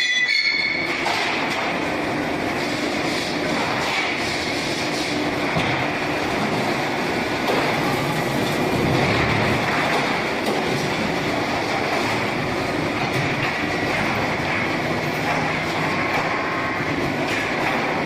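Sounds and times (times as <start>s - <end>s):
block making machine running: 0.5s - 18.0s.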